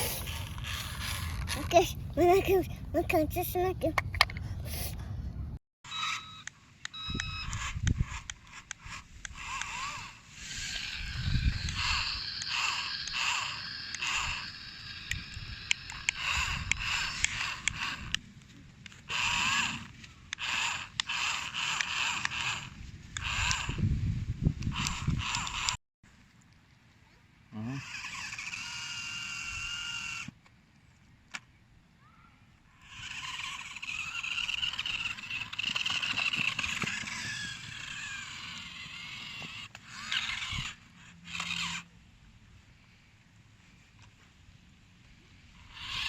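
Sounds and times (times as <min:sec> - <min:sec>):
toy car motor whirring: 0:00.0 - 0:05.0, 0:05.9 - 0:18.2, 0:18.8 - 0:25.8, 0:27.6 - 0:30.4, 0:32.8 - 0:41.9, 0:45.6 - 0:46.0.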